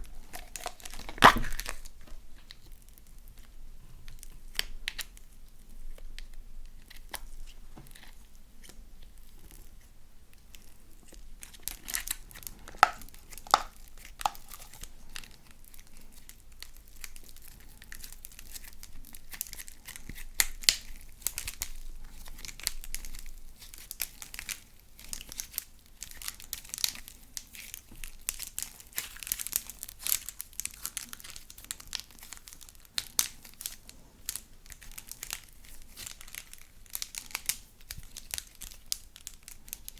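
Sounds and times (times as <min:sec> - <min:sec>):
slime squished by hand: 0:00.0 - 0:02.6, 0:11.0 - 0:39.9.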